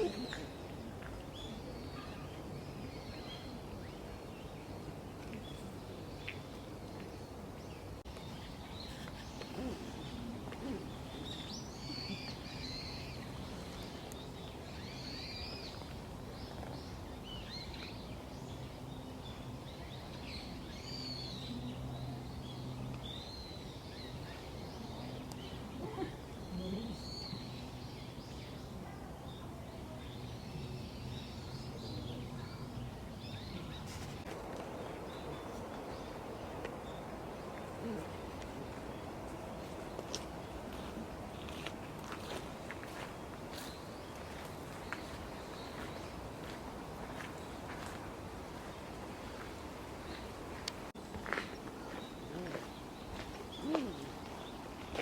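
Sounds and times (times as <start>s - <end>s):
small birds chirping: 22.4s - 48.0s.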